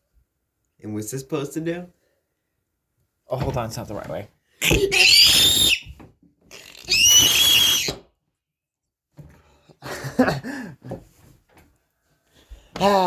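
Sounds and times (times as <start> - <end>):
high-pitched squeals: 4.7 - 5.8, 6.8 - 7.9.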